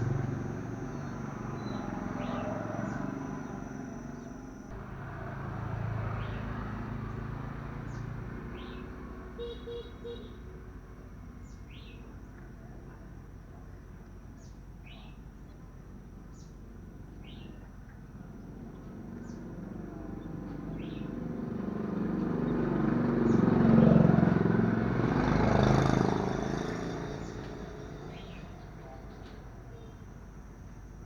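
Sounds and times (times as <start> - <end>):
passing road traffic: 0.0 - 13.4, 18.1 - 31.0.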